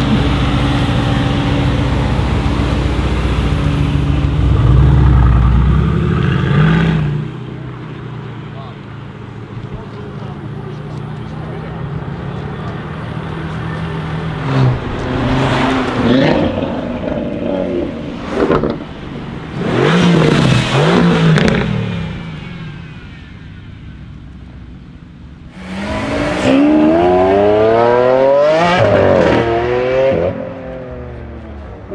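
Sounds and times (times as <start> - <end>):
car accelerating hard: 0.0 - 7.3, 10.3 - 22.2, 25.5 - 31.2
car engine revving: 0.0 - 7.6, 9.0 - 22.7, 25.5 - 31.5
exhaust crack: 8.6 - 22.6.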